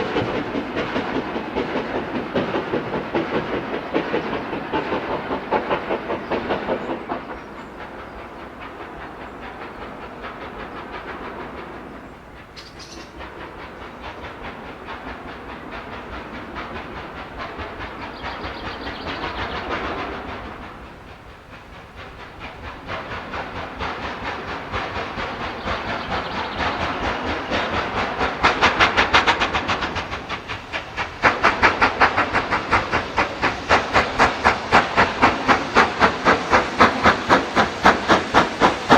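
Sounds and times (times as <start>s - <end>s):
steam hissing: 0.0s - 38.9s
steam locomotive exhaust beats: 0.0s - 38.9s.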